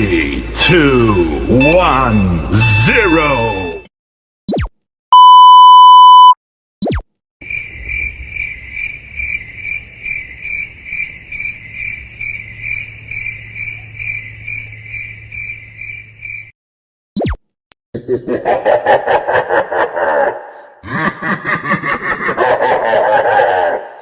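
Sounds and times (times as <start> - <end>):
censor bleep: 5.1 - 6.4
crickets chirping sound effect: 7.4 - 16.5.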